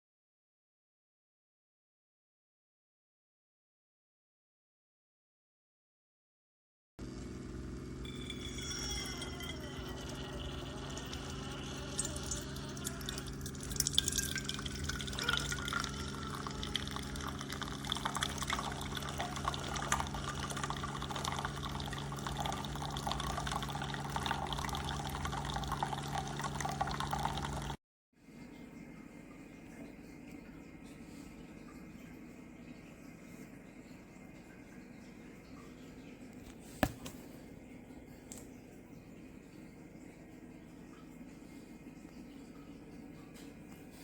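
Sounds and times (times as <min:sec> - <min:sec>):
coffee maker pump humming: 0:07.0 - 0:44.0
liquid streaming into cup: 0:08.0 - 0:27.8.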